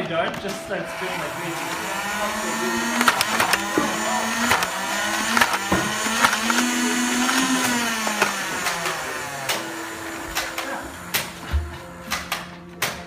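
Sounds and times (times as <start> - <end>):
toy blaster flywheel motors whirring: 0.9 - 11.4
sharp clicks of darts firing: 12.0 - 13.0.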